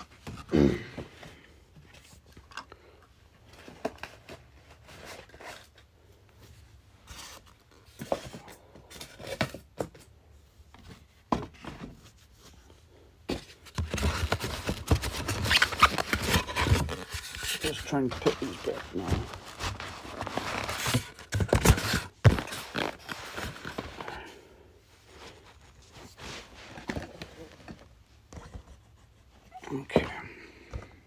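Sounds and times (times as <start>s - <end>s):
rubbing and scraping in box: 3.5s - 5.9s, 13.3s - 30.0s.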